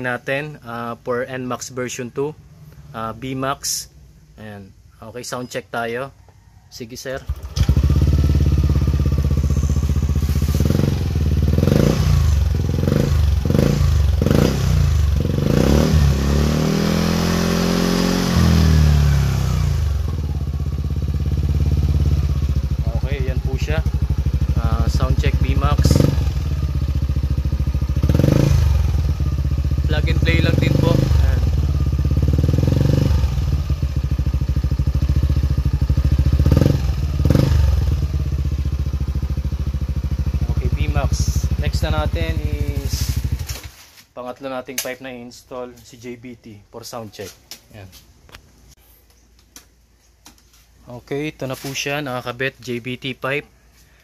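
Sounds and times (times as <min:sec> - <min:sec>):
scooter engine idling and revving: 0:07.2 - 0:43.7.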